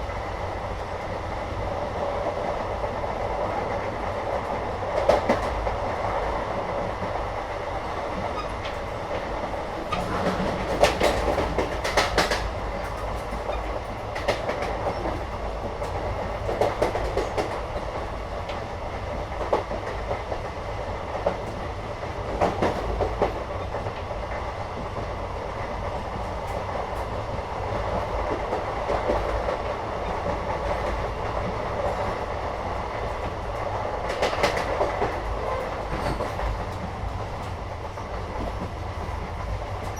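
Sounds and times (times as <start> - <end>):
train rumble from inside: 0.0 - 39.9
wheels clacking over rails: 8.2 - 18.6, 33.0 - 39.9.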